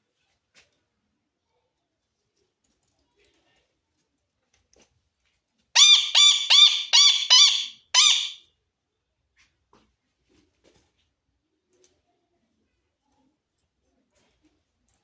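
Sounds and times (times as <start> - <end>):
parrot squawking: 5.8 - 8.4.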